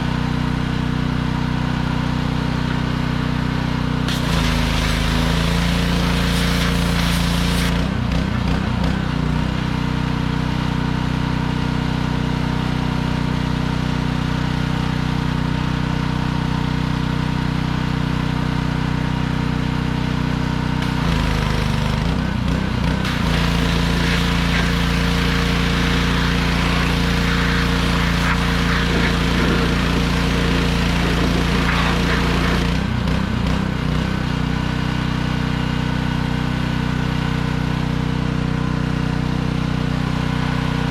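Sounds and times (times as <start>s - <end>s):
pressure washer engine running: 0.0s - 40.9s
spray hissing: 4.1s - 7.7s, 23.1s - 32.8s.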